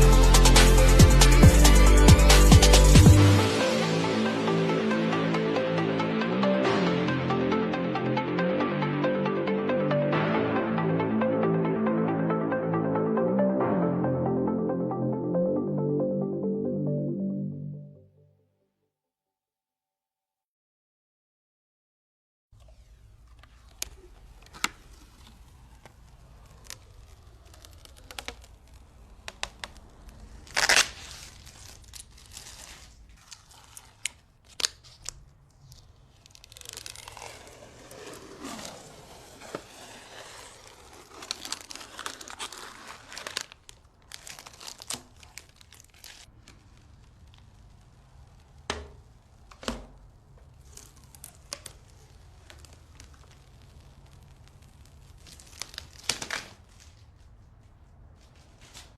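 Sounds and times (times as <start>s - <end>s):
packaging crinkling and tearing: 22.6s - 58.9s
packaging rustling: 23.2s - 58.9s.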